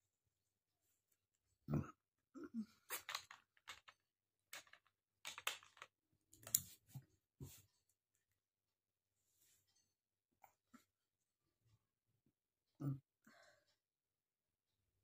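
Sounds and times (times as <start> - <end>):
person burping: 1.7 - 2.8, 12.8 - 13.0.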